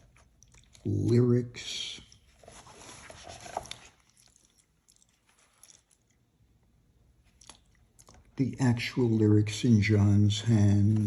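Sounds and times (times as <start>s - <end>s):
paper rustling: 2.1s - 5.9s.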